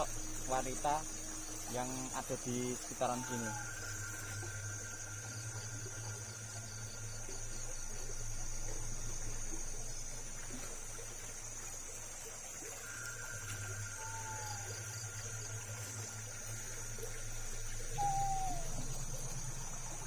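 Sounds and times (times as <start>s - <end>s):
low hum: 0.0s - 20.0s
night insects shrilling: 0.0s - 20.0s
falling whistle-like notes: 17.9s - 19.3s.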